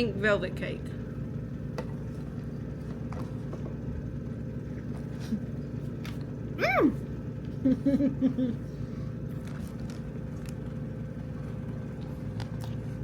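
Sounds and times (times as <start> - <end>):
car idling with air conditioning: 0.0 - 13.0
person saying ooh: 6.6 - 7.0.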